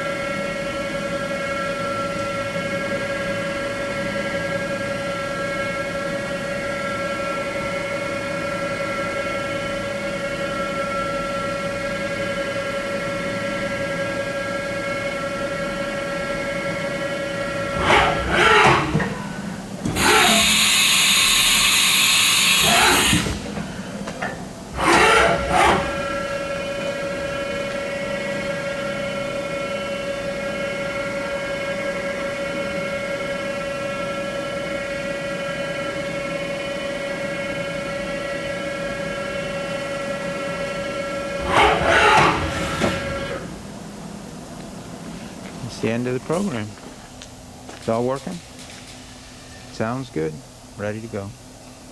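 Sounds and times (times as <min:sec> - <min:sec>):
machine spindle whine: 0:00.0 - 0:51.9
loud hiss: 0:20.0 - 0:23.5.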